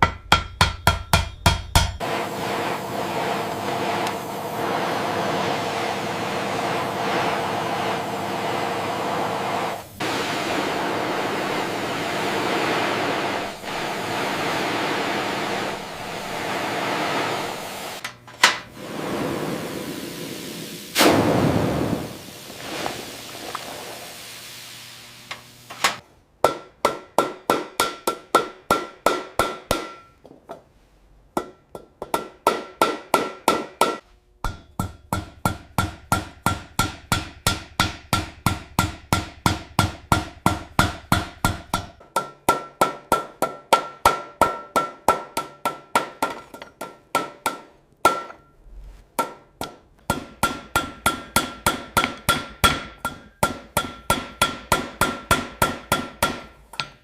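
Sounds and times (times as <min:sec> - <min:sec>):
small hammer tapping on metal: 0:00.0 - 0:02.0, 0:49.2 - 0:57.0.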